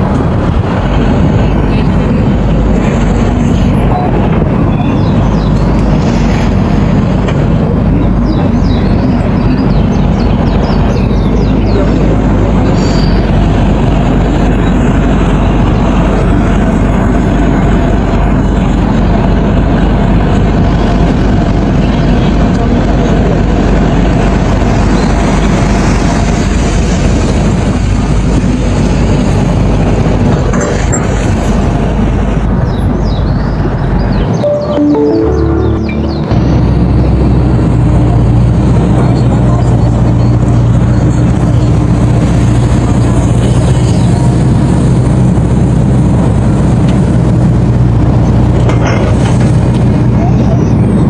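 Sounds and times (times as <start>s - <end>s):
excavator diesel engine running: 0.0s - 51.0s
short high descending chirps: 34.4s - 37.1s.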